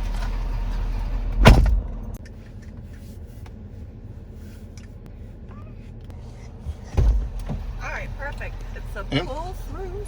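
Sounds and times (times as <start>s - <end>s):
vehicle engine idling: 0.0s - 10.0s.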